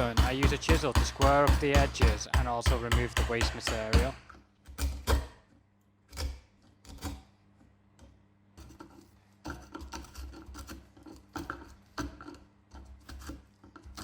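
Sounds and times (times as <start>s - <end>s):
chisel scraping wood: 0.0s - 4.3s, 8.6s - 14.0s
chisel knocks on wood: 0.0s - 4.4s.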